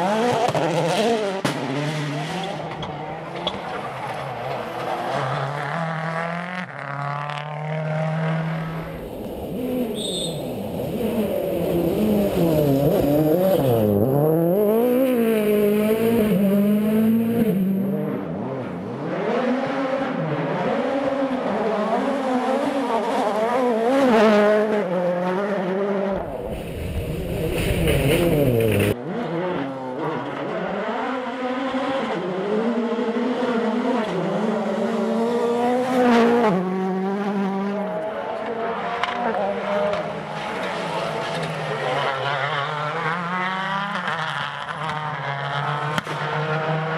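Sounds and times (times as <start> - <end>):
rally car engines revving: 0.0 - 46.9
tyre squeal: 9.8 - 10.7.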